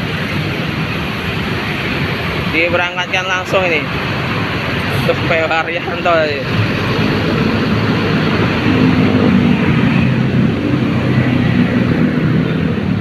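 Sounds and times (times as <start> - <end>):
diesel bus engine droning: 3.8 - 13.0.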